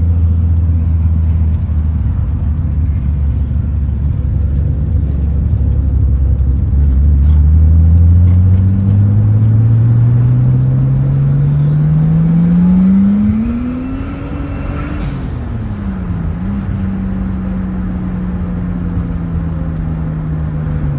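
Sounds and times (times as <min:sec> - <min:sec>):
turbocharged engine accelerating: 0:00.0 - 0:20.9.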